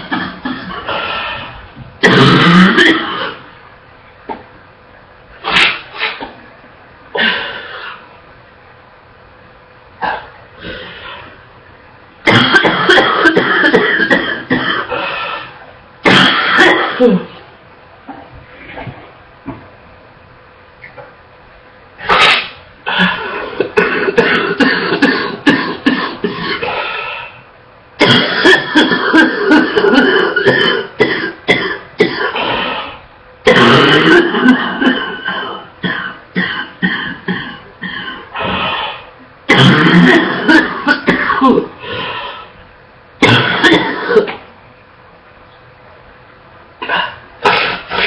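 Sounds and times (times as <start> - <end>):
woman coughing: 2.0 - 3.4, 12.3 - 15.0, 16.1 - 17.4, 22.0 - 26.8, 28.0 - 32.7, 33.4 - 38.4, 39.5 - 41.8, 43.2 - 44.4, 46.8 - 48.0.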